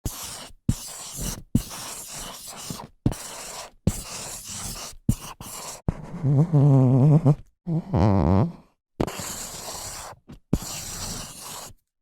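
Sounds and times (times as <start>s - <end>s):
marker writing on whiteboard: 0.0s - 6.2s, 9.0s - 11.8s.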